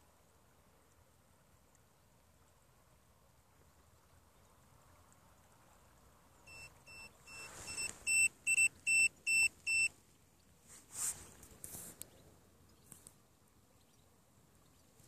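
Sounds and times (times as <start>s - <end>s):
high electronic beeps: 6.5s - 9.9s
rustling: 7.3s - 8.7s, 10.6s - 12.2s.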